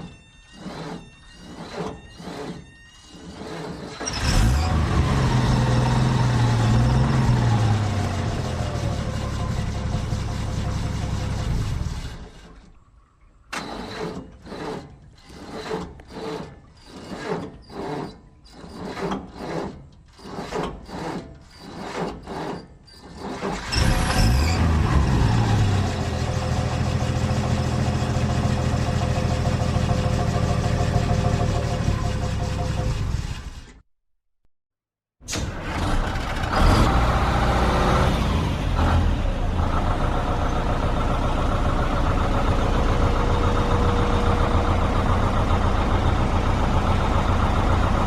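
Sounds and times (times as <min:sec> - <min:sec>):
car engine cranking: 0:03.3 - 0:12.8, 0:13.5 - 0:18.1, 0:18.8 - 0:33.8
car engine revving and idling: 0:04.1 - 0:12.4, 0:23.6 - 0:33.2, 0:35.8 - 0:48.0.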